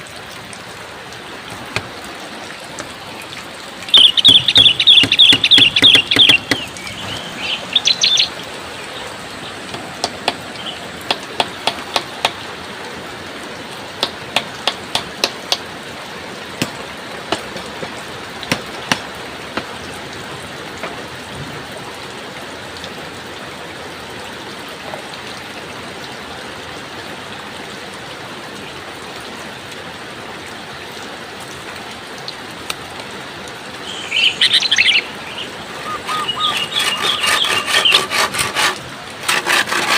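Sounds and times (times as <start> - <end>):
steady rain hiss: 0.0 - 39.9
bird chirps: 3.9 - 8.4, 33.8 - 38.0
sharp knocks or taps: 4.0 - 6.7.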